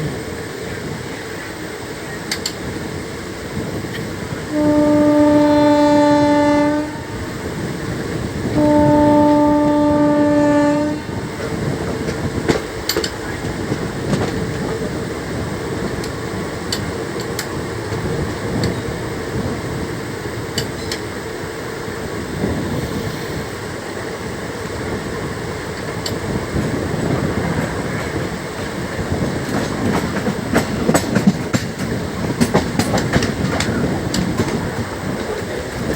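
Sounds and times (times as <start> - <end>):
train rumbling on rails: 0.0 - 35.9
wheels clicking over rail joints: 2.2 - 2.7, 11.4 - 19.6, 20.4 - 21.2, 25.7 - 35.9
train horn blasts: 4.4 - 7.4, 8.4 - 11.4.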